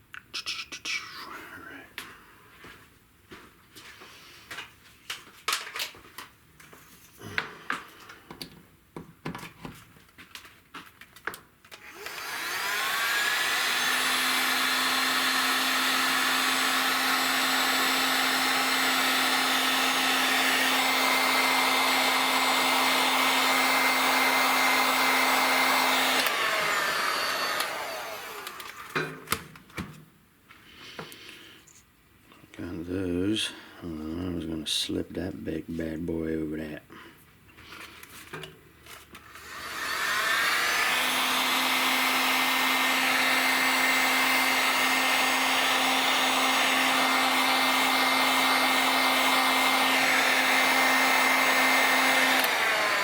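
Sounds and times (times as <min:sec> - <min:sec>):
heat gun whining and humming: 0:11.7 - 0:29.4, 0:39.2 - 0:53.0.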